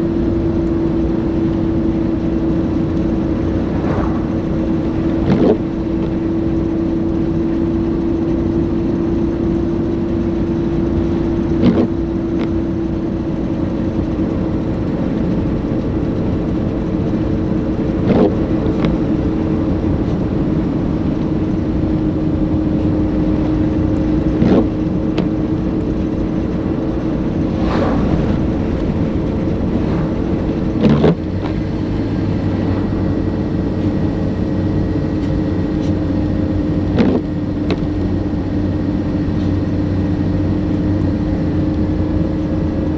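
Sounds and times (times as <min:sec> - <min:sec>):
car engine and road drone: 0:01.6 - 0:06.6, 0:17.8 - 0:36.6
short brief sound: 0:03.4 - 0:05.2, 0:27.4 - 0:30.8.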